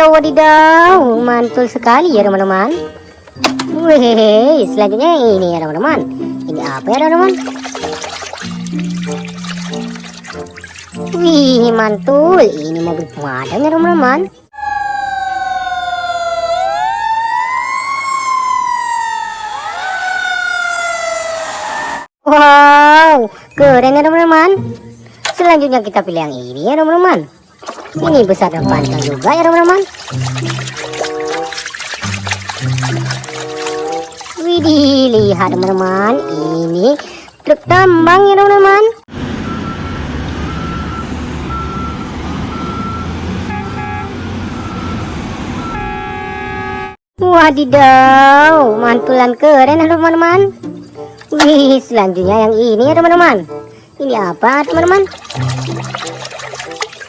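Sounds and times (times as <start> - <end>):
fire engine siren wailing: 14.5 - 22.1, 39.1 - 47.0
reversing alarm beeping: 39.2 - 47.0
horn honking: 39.3 - 47.0.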